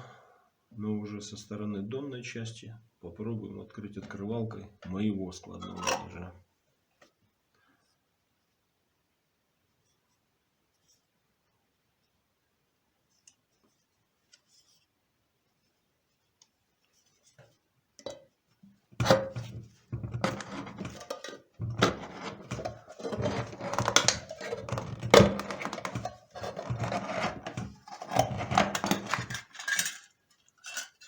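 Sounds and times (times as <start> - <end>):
can opener cutting tin can: 20.2 - 29.6.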